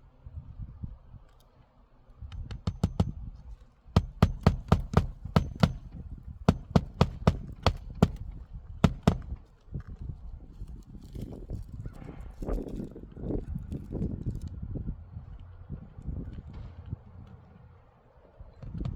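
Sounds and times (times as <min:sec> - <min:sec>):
hammer driving nails: 0:02.3 - 0:03.4, 0:04.0 - 0:09.5.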